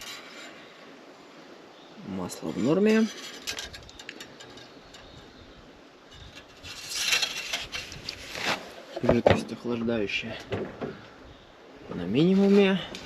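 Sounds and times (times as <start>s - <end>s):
rough scraping and rubbing: 0.0s - 0.8s, 2.3s - 4.8s, 6.1s - 9.6s, 12.0s - 12.9s.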